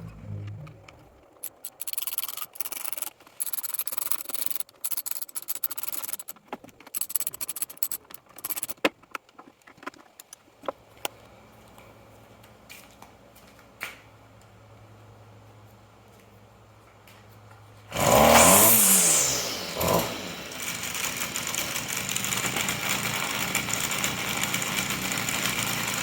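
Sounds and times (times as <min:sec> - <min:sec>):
faint low hum: 0:00.0 - 0:01.2
sharp clicks: 0:00.0 - 0:10.4
tools scraping and rattling: 0:00.1 - 0:10.3.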